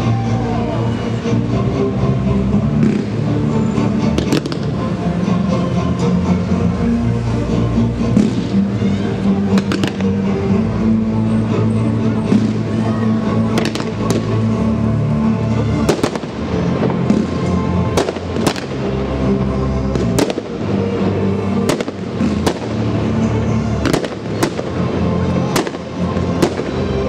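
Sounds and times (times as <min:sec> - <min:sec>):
steady music: 0:00.0 - 0:27.0
fireworks banging: 0:02.6 - 0:04.8, 0:08.0 - 0:08.8, 0:09.4 - 0:10.4, 0:12.2 - 0:12.8, 0:13.4 - 0:14.6, 0:15.6 - 0:27.0.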